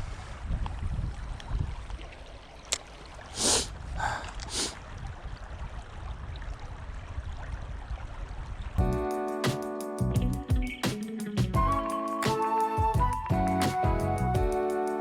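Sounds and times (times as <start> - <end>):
wind rumble on microphone: 0.0 - 2.3, 3.6 - 9.0, 12.8 - 14.5
creek water running: 0.0 - 15.0
music: 8.8 - 15.0.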